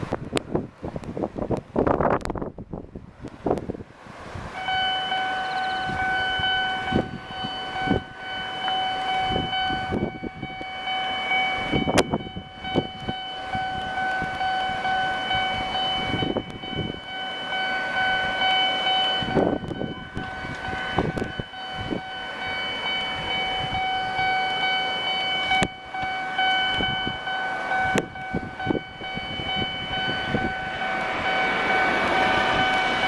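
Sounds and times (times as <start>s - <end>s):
wind thumping on microphone: 0.0s - 4.6s, 9.2s - 10.7s, 11.6s - 14.4s, 19.2s - 22.0s
level crossing warning bell: 4.5s - 33.0s.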